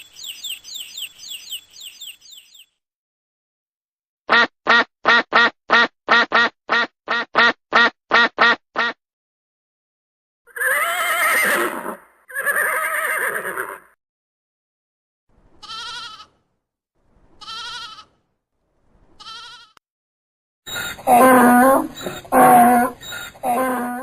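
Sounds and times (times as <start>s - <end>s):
goat or sheep bleating: 15.6s - 16.4s, 17.4s - 18.2s, 19.2s - 19.8s
long animal calls: 20.7s - 24.0s
loud animal call: 20.7s - 24.0s.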